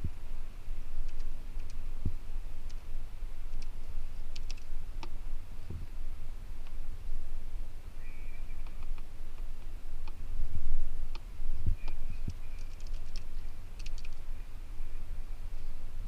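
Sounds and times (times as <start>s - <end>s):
steady low hum: 0.0s - 16.0s
keyboard keys clicking: 11.8s - 14.2s.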